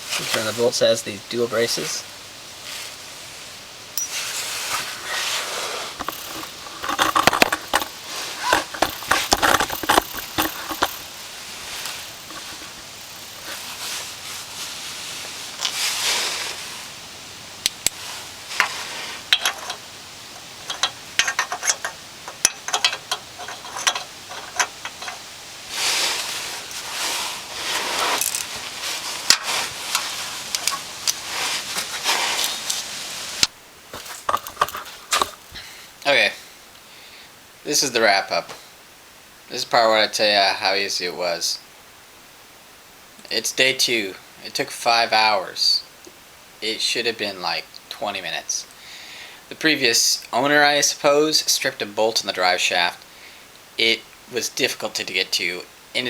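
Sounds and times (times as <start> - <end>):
wrench clinking on metal bolts: 4.0 - 4.2, 6.0 - 11.2, 18.6 - 25.3
rustling and scraping: 4.0 - 17.0, 17.9 - 35.8.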